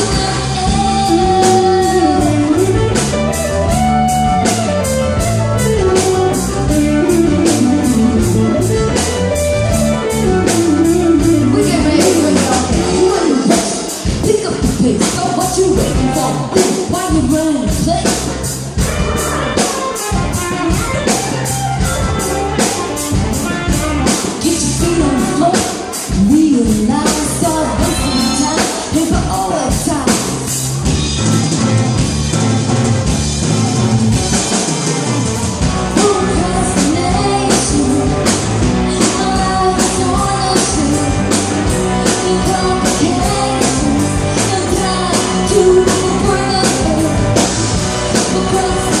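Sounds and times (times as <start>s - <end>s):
person singing: 0.0s - 4.5s, 10.0s - 18.5s, 24.3s - 30.6s, 35.8s - 49.0s
rock song with drum beat: 0.0s - 49.0s.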